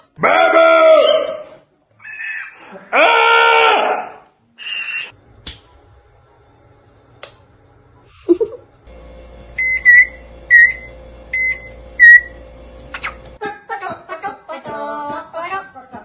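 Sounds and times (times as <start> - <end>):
low hum: 8.8 - 13.4.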